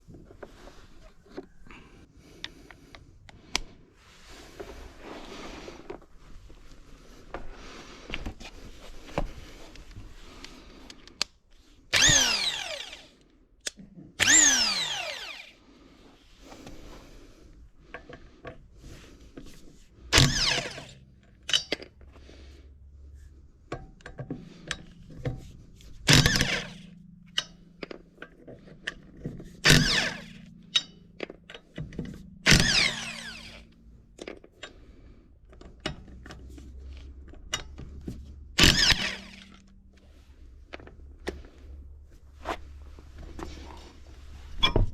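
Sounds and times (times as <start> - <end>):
electric impact wrench whining: 11.9 - 13.2, 14.2 - 15.6, 20.1 - 21.0, 26.0 - 27.6, 29.6 - 31.0, 32.1 - 33.8, 38.6 - 39.9
tool handling clicks and knocks: 17.8 - 22.2, 23.7 - 44.9.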